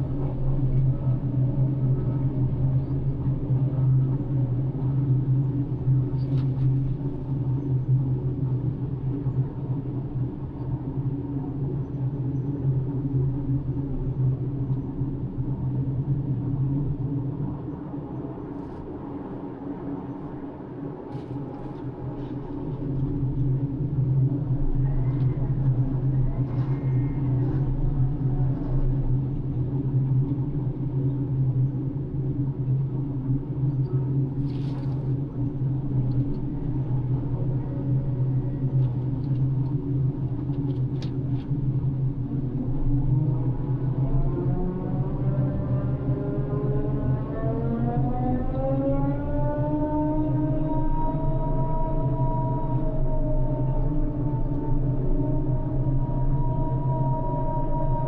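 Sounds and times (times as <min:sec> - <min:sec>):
crane engine droning: 0:35.1 - 0:58.0.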